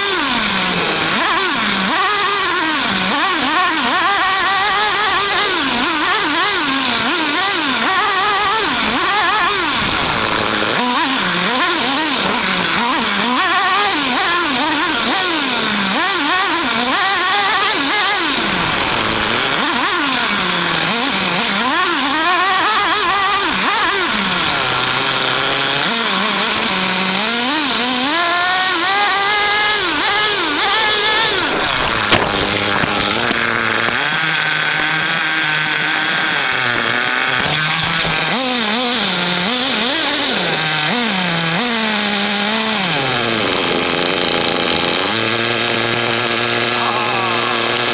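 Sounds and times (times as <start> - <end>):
small nitro engine revving: 0.0 - 47.9
sharp click: 32.1 - 34.0.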